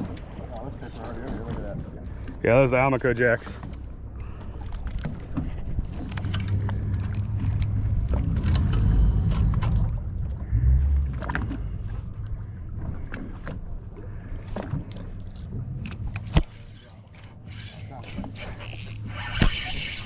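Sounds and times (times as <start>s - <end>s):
boat engine humming: 0.0s - 20.0s
water rushing: 0.0s - 20.0s.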